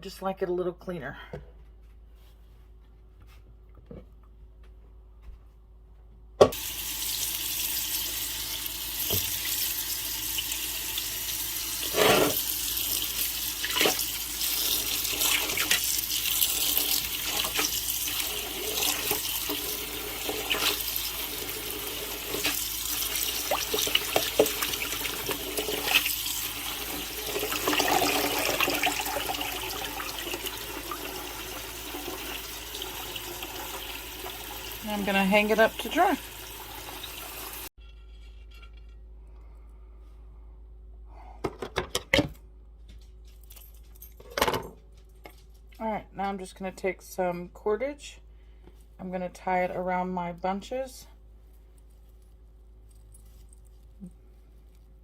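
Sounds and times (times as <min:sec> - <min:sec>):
tap water running into sink: 0:06.4 - 0:37.7.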